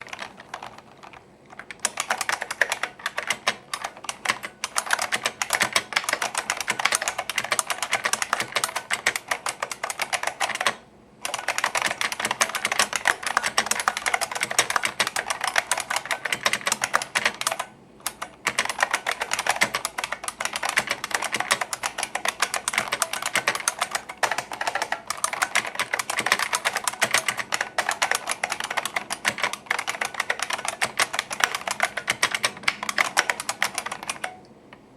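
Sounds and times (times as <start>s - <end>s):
clicky keyboard typing: 0.0s - 34.5s.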